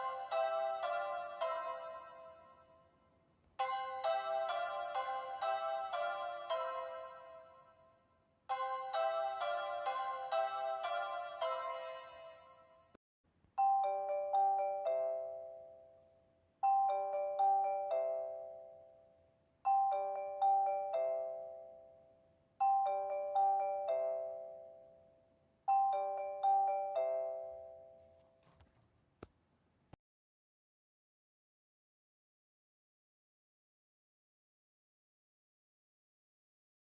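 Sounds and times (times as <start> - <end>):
bell-like electronic station chime: 0.0 - 2.8, 3.6 - 13.0.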